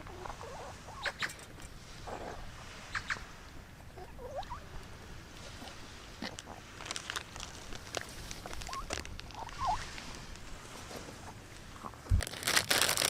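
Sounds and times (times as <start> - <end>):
small dog whimpering: 4.0 - 4.6.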